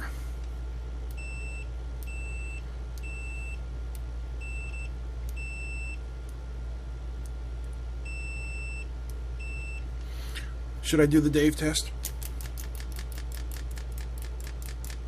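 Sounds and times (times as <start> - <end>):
steady low hum: 0.0 - 15.0
multimeter continuity beeps: 1.1 - 6.4, 8.0 - 9.9.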